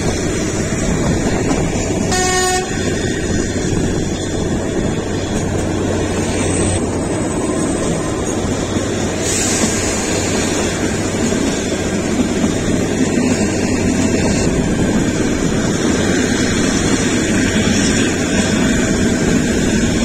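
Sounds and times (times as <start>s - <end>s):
train rumbling on track: 0.0s - 20.0s.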